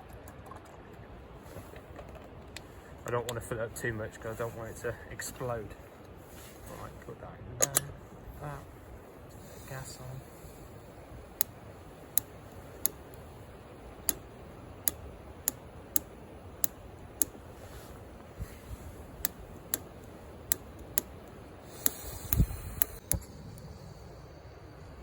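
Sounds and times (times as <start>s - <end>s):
gas burner hiss: 2.6s - 25.0s
gas stove igniter clicking: 7.6s - 8.0s, 10.6s - 23.2s.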